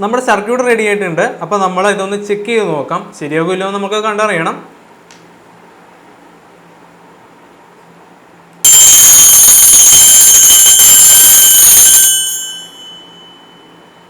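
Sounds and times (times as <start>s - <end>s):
high-pitched metallic alarm ringing: 8.6s - 14.0s
lingering ringing tone: 8.6s - 14.0s.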